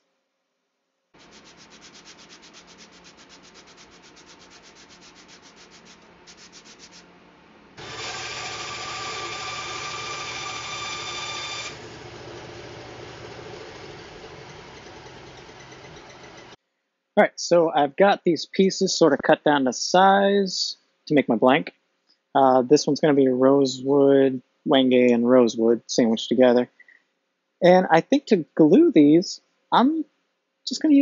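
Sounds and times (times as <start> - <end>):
sandpaper rasping on wood: 1.2 - 7.1.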